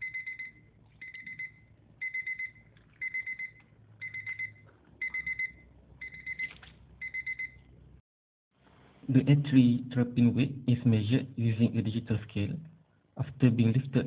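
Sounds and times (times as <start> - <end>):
timer alarm beeping: 0.0 - 7.6.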